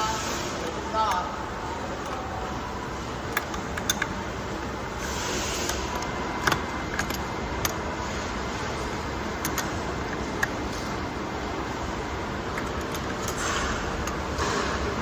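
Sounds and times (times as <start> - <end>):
steady background noise: 0.0 - 15.0
wrench clicking on metal: 3.3 - 4.2, 5.6 - 7.9, 9.4 - 11.0, 12.5 - 14.4.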